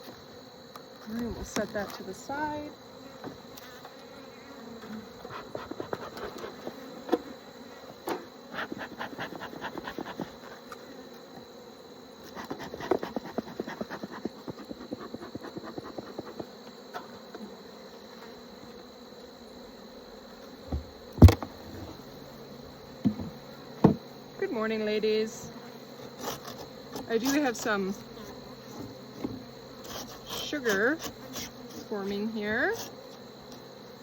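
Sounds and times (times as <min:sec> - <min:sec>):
honeybees buzzing: 0:00.0 - 0:34.0
loud thumps: 0:20.7 - 0:21.9.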